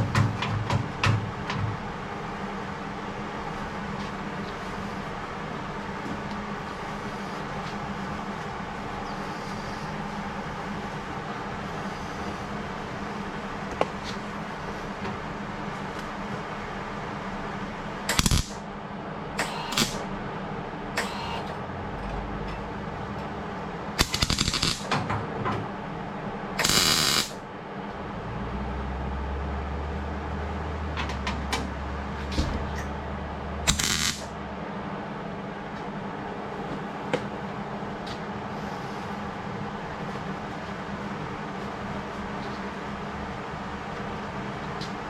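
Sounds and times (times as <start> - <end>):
steady shop hum: 0.0 - 45.0
metalworking clicks and crackles: 18.1 - 18.6, 24.0 - 24.9.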